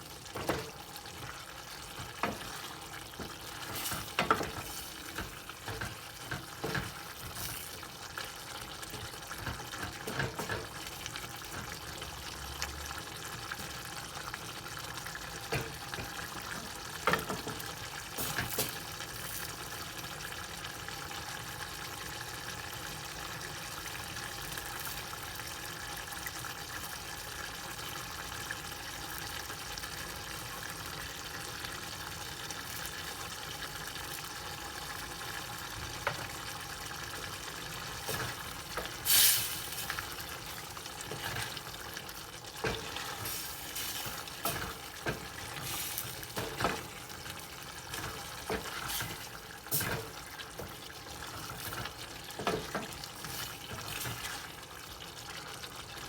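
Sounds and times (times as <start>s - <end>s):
steady hiss of liquid: 38.9s - 40.0s, 45.4s - 46.6s.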